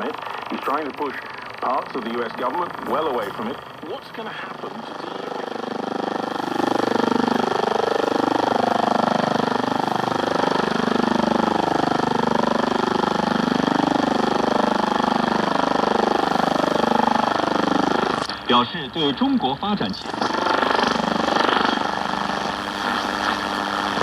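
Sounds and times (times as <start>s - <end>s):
radio broadcast: 0.0s - 8.4s, 17.9s - 24.0s
rapid pulsing radio interference: 0.0s - 24.0s.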